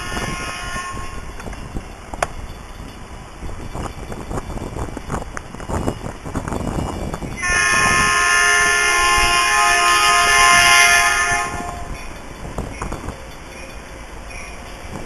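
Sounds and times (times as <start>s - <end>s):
train air horn blast: 0.0s - 1.2s, 7.4s - 11.9s
wind buffeting microphone: 0.0s - 15.0s.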